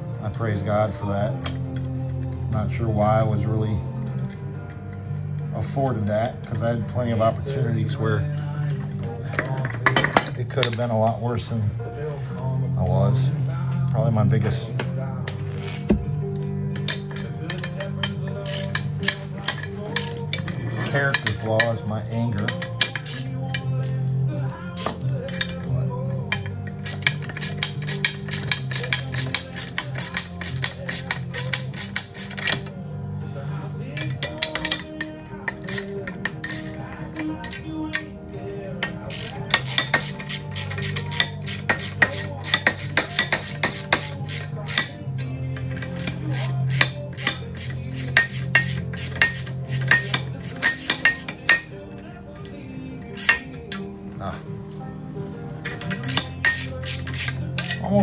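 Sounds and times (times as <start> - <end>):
radio music: 0.0 - 58.0
hand tool clicking on metal: 14.8 - 32.8, 33.6 - 38.1, 38.8 - 51.8, 52.4 - 53.9, 55.6 - 58.0.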